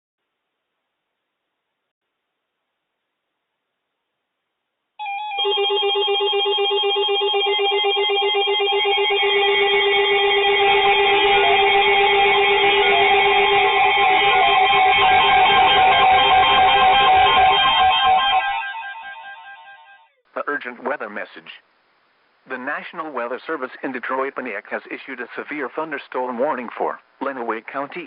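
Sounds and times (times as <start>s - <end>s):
electronic warning alarms beeping: 5.0s - 19.8s.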